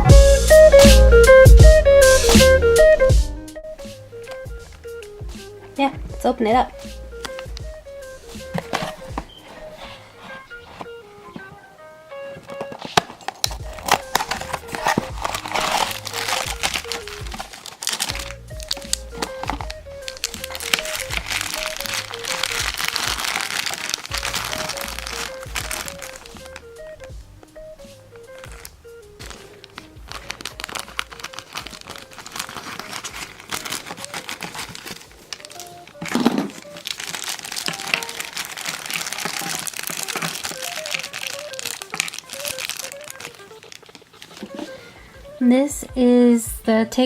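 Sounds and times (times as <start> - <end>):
background music stepping melody: 0.0 - 47.0
packaging crinkling: 5.5 - 27.1, 28.1 - 45.4.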